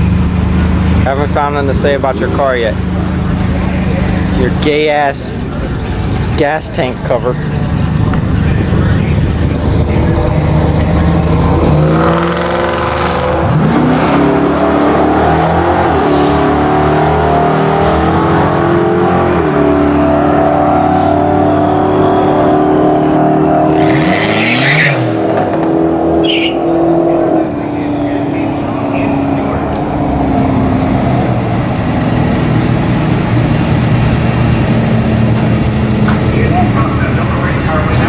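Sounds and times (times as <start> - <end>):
car engine accelerating: 0.0 - 38.0
short high-pitched squeal: 26.0 - 26.7.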